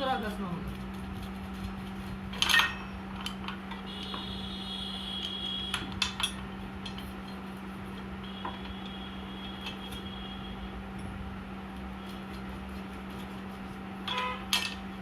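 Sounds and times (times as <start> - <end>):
brake pad scraping on abrasive paper: 0.5 - 2.2, 12.0 - 13.9.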